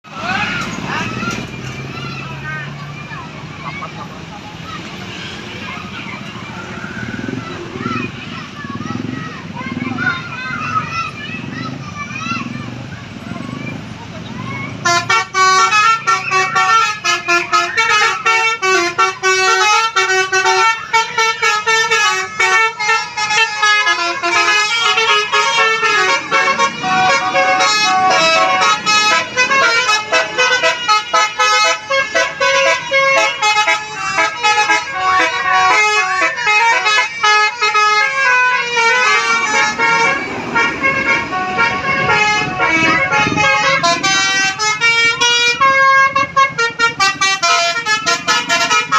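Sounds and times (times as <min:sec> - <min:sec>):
musical air horn melody: 0:14.8 - 0:48.9.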